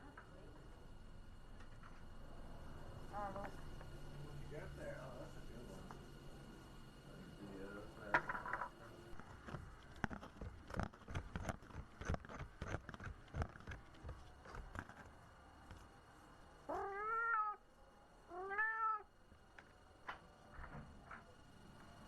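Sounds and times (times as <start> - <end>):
cat meowing: 16.7 - 17.6, 18.3 - 19.1.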